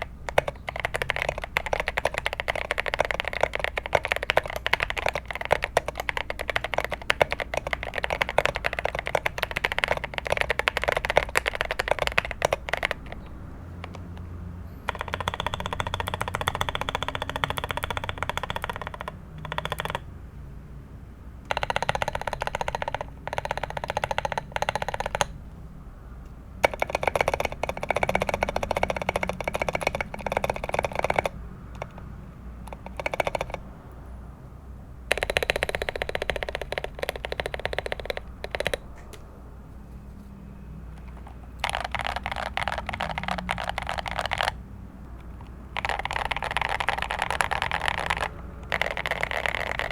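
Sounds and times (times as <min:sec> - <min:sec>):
fast typing on mechanical keyboard: 0:00.0 - 0:20.1, 0:21.5 - 0:25.4, 0:26.6 - 0:34.0, 0:35.1 - 0:39.2, 0:40.6 - 0:49.9.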